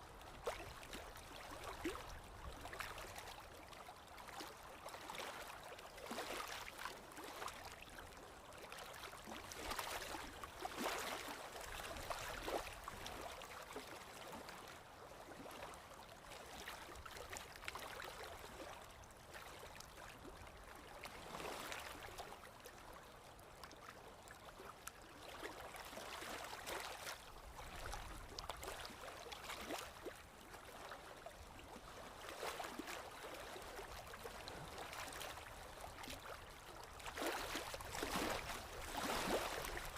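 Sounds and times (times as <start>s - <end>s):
water splashing and gurgling: 0.2s - 14.7s, 24.5s - 39.9s.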